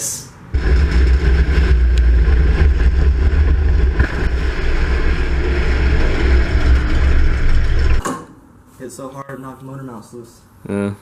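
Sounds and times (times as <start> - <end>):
race car engine running: 0.5 - 8.0.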